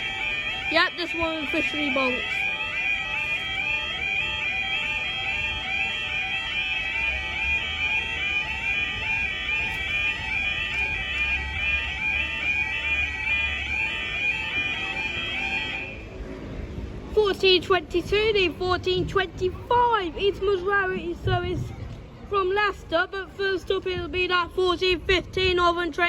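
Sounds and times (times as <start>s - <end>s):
warbling level crossing alarm: 0.0s - 16.0s.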